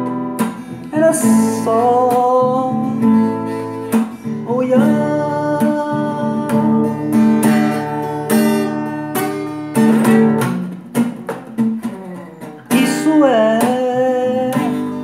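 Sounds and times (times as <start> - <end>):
acoustic guitar strumming chords: 0.0 - 15.0
person singing a chant: 4.5 - 6.9, 12.0 - 15.0.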